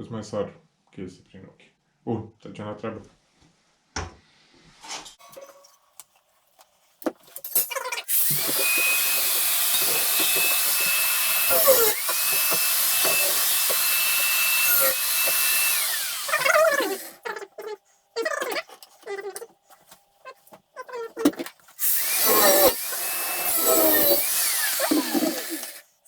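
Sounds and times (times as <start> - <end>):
angle grinder cutting steel: 8.1 - 17.2, 21.8 - 25.9.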